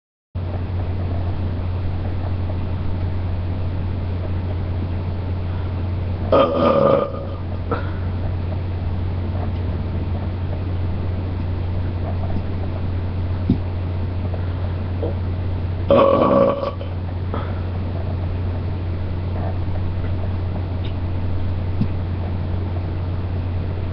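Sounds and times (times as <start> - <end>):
steady low hum: 0.4 - 23.9
person burping loudly: 6.3 - 8.0, 15.9 - 16.9.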